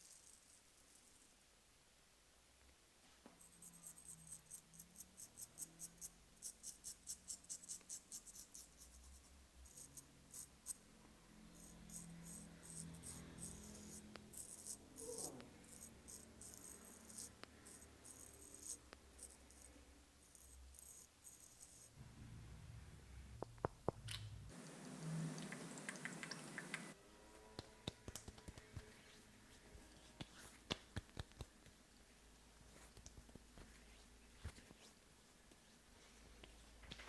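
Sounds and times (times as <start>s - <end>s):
razor scraping stubble: 11.5s - 22.0s.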